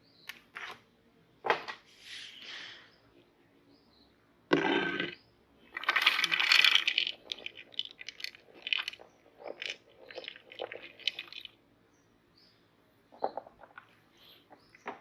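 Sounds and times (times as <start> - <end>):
popcorn crunching in a meat grinder: 5.8 - 11.4.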